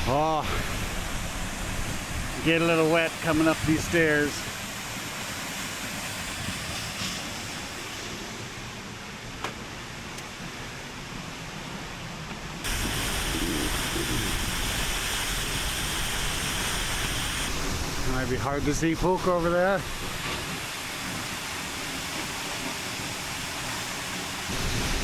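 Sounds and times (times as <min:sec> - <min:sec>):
waterfall rushing: 0:00.0 - 0:09.0, 0:12.6 - 0:25.0.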